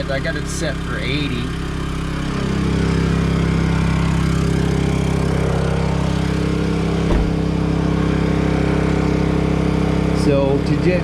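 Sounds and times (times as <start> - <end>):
portable generator running: 0.0 - 11.0
short bump: 7.0 - 7.5.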